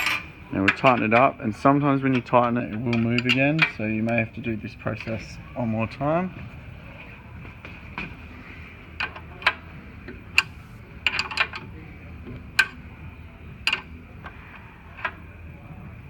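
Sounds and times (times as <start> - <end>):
spanner clicking on bolts: 2.1 - 3.8, 9.0 - 11.6, 13.6 - 13.9.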